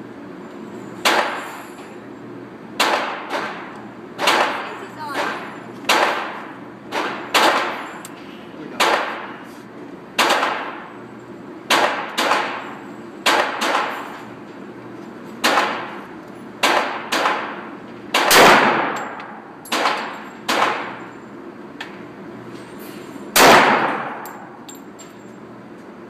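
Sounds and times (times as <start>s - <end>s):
handgun shots: 2.8s - 7.8s, 8.8s - 9.4s, 10.2s - 10.8s, 11.7s - 12.6s, 13.2s - 14.1s, 15.4s - 16.0s, 16.6s - 21.0s, 23.4s - 24.4s.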